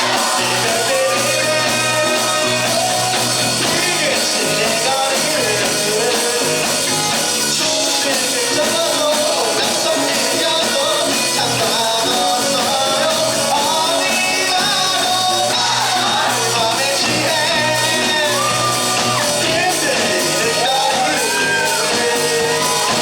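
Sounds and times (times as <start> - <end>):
drums: 0.0 - 23.0
live rock band playing: 0.0 - 23.0.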